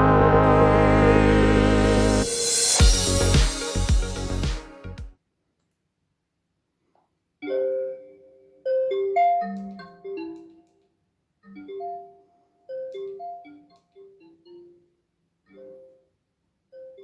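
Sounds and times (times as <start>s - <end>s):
bell-like marimba melody: 8.7s - 10.5s.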